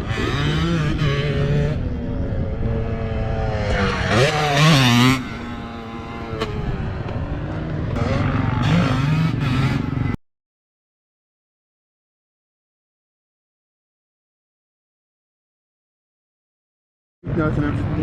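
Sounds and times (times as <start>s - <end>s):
dirt bike engines revving: 0.0s - 10.2s, 17.3s - 18.0s.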